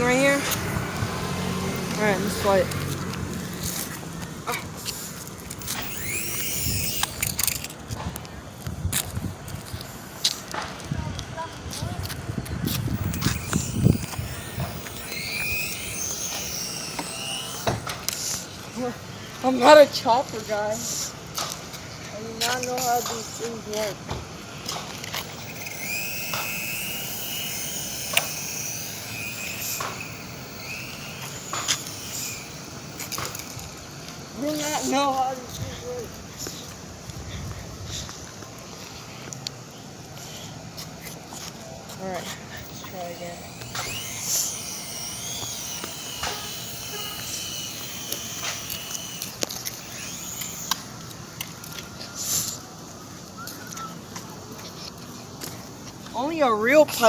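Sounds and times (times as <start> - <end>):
toy helicopter motor whirring: 0.0 - 39.4, 40.1 - 52.7, 53.4 - 57.0
sharp click: 12.7 - 18.4, 25.0 - 33.6, 42.6 - 50.8.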